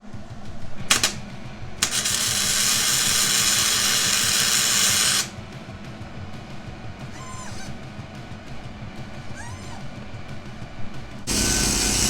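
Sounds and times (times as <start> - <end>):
metalworking machine hissing: 0.9 - 1.2, 1.8 - 5.3, 11.3 - 12.0.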